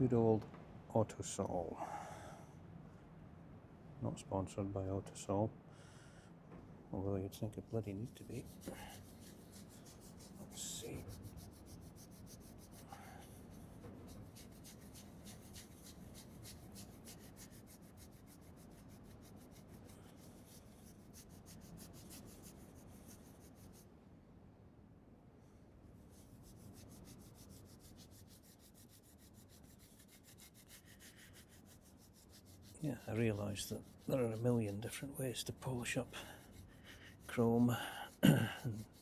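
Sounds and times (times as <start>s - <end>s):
cloth rubbing metal: 7.8s - 23.9s, 26.0s - 39.0s.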